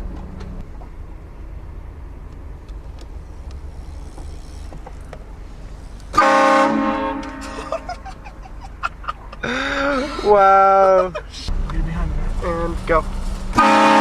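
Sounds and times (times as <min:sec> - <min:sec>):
vehicle low rumble: 0:00.0 - 0:14.0
train horn blast: 0:06.1 - 0:07.6, 0:13.5 - 0:14.0.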